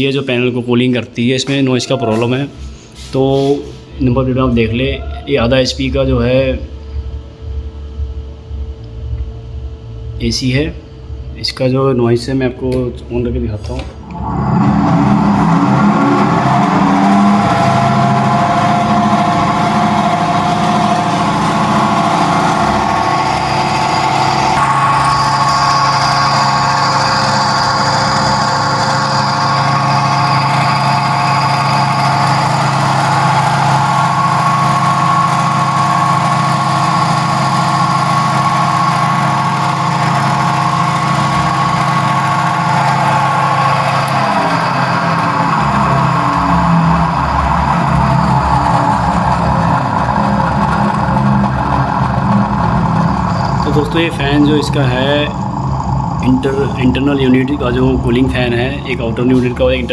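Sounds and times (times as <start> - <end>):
air conditioner humming drone: 0.0 - 59.9.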